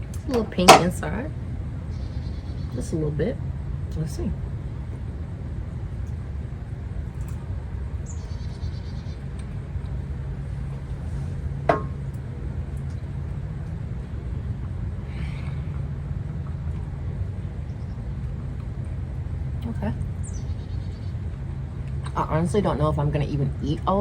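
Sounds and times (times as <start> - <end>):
steady low rumble: 0.0 - 24.0
faint bird chirps: 8.0 - 9.3.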